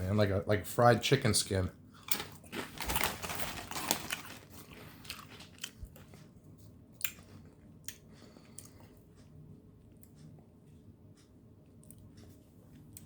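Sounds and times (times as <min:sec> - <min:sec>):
crunching chips: 0:02.0 - 0:06.2
person chewing: 0:04.4 - 0:06.3, 0:06.9 - 0:10.3.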